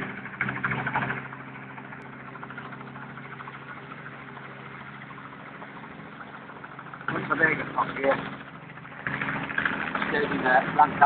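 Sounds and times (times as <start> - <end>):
helicopter engine hum: 0.0 - 11.0
rotor blades beating: 0.0 - 11.0.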